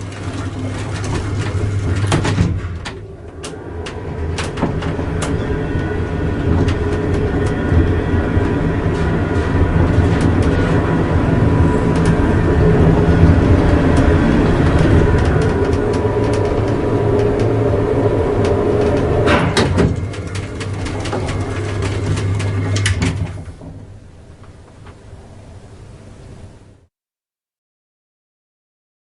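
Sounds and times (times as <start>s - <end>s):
lift car clicks and rattles: 0.0s - 25.0s
lift drive humming: 0.0s - 26.8s.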